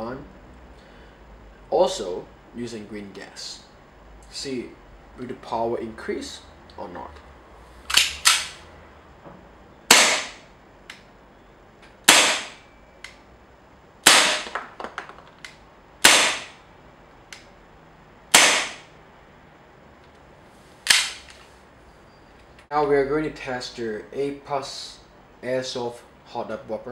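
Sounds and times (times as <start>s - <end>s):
airsoft gun shots: 9.9s - 10.4s, 12.0s - 12.6s, 14.0s - 14.6s, 16.0s - 16.6s, 18.3s - 18.9s.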